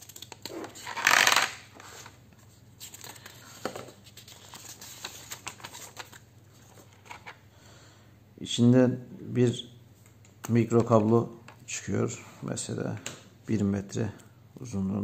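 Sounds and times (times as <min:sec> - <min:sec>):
packaging rustling: 0:00.0 - 0:07.4.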